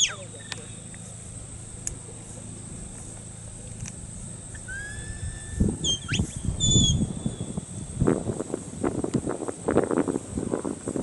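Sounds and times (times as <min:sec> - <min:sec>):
low rumbling noise: 0:00.0 - 0:11.0
sliding whistle commands: 0:04.6 - 0:07.6.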